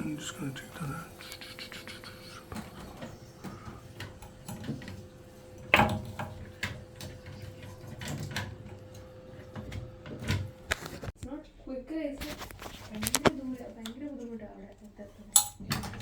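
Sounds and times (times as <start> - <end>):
faint steady hum: 0.0 - 12.1.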